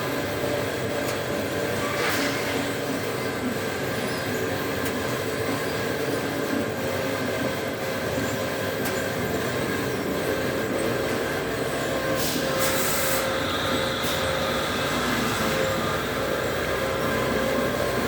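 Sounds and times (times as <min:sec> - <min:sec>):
extrusion machine droning: 0:09.1 - 0:18.0
hiss: 0:12.2 - 0:16.3.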